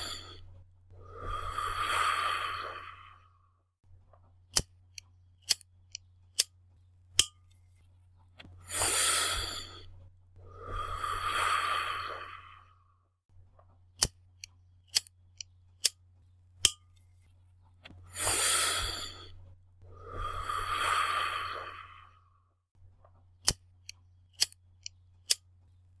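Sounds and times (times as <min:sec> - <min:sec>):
exhaling smoke: 0:00.0 - 0:03.3, 0:08.6 - 0:12.8, 0:18.1 - 0:22.2
drawing on a cigarette: 0:08.6 - 0:12.0, 0:18.1 - 0:21.5.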